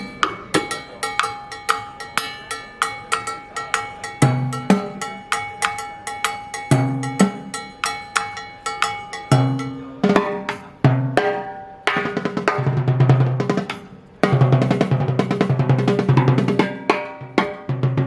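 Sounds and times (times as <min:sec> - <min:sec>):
pitched drum hits: 0:08.8 - 0:18.0
fast drum roll: 0:11.9 - 0:18.0.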